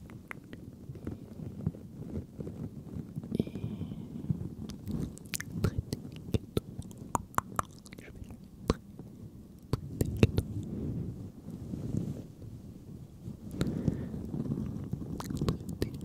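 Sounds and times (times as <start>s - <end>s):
soft whispering: 3.2s - 9.0s, 9.6s - 12.2s, 13.3s - 16.0s
wet mouth clicks and smacks: 4.7s - 8.8s.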